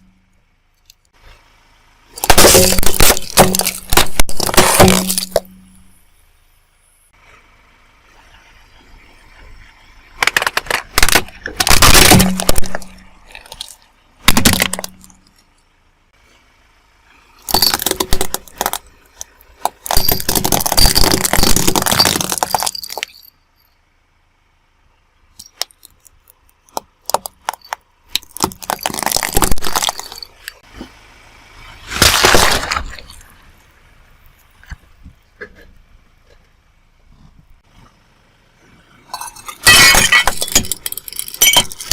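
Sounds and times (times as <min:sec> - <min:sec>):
tyre crunching objects: 0:02.2 - 0:05.5, 0:10.2 - 0:15.4, 0:17.4 - 0:23.3, 0:25.6 - 0:30.9, 0:31.8 - 0:33.4.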